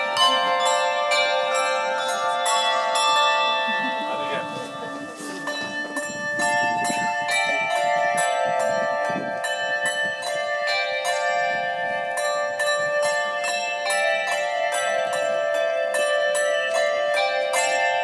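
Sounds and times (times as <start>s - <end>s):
tuned bells ringing a tune: 0.0s - 18.0s.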